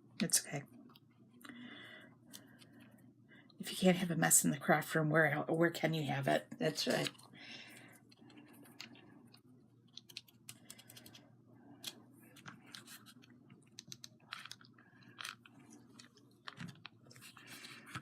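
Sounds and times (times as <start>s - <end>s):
low steady hum: 0.0s - 18.0s
craft pieces clicking and tapping: 13.6s - 16.9s.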